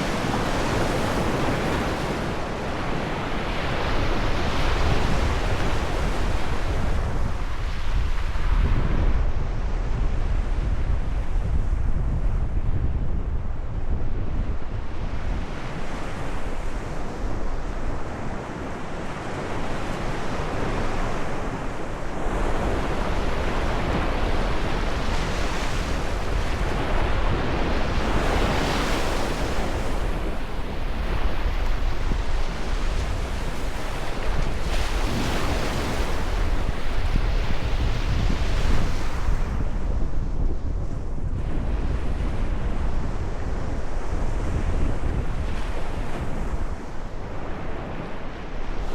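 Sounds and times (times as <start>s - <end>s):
wind rumbling on microphone: 0.0s - 48.9s.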